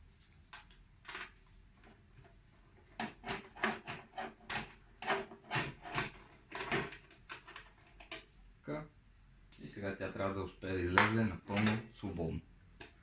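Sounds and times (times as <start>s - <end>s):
metal clunks and scrapes: 2.8s - 8.1s.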